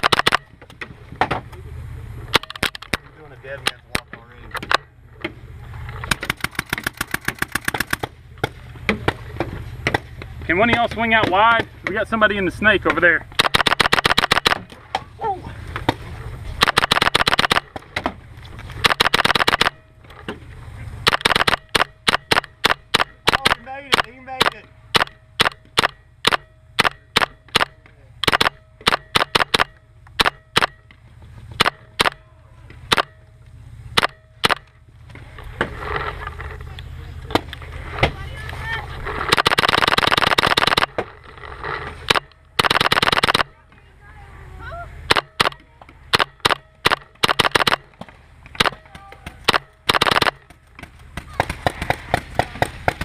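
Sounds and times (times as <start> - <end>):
paintball marker shots: 0.0 - 0.5, 6.1 - 9.2, 12.8 - 14.8, 16.6 - 18.2, 18.8 - 19.8, 21.0 - 30.9, 34.0 - 34.8, 39.3 - 41.0, 42.1 - 43.5, 45.1 - 53.0.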